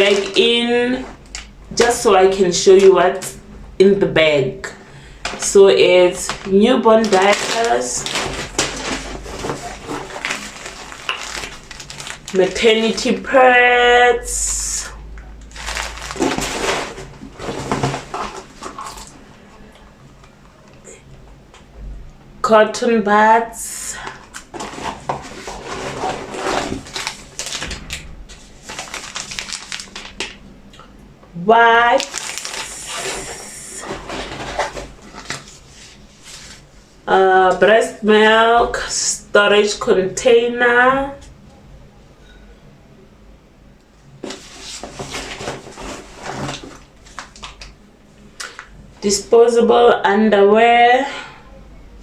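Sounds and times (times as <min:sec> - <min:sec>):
plastic packaging crinkling: 0:00.0 - 0:02.9, 0:05.0 - 0:13.4, 0:14.4 - 0:20.4, 0:24.0 - 0:30.9, 0:31.7 - 0:36.7, 0:44.2 - 0:48.8.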